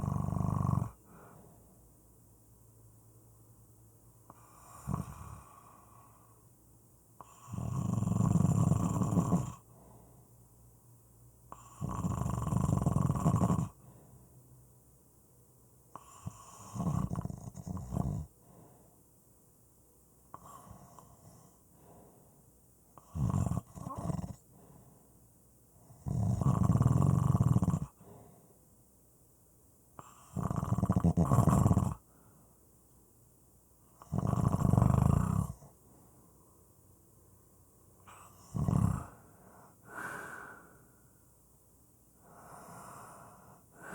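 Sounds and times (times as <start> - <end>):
person snoring: 0.0 - 1.4, 4.3 - 6.3, 7.2 - 9.6, 11.5 - 13.8, 16.0 - 18.3, 23.0 - 24.4, 26.0 - 28.0, 30.0 - 32.0, 34.0 - 35.6, 38.1 - 40.9, 42.2 - 43.9
quiet breathing: 0.0 - 26.3, 27.0 - 30.6, 31.4 - 43.9.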